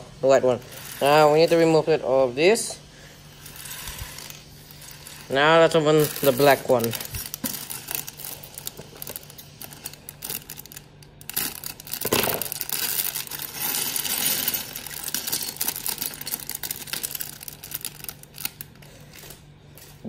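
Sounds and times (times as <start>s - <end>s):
plastic bag crinkling: 3.5s - 20.0s
plastic bricks clicking and clattering: 11.2s - 18.0s.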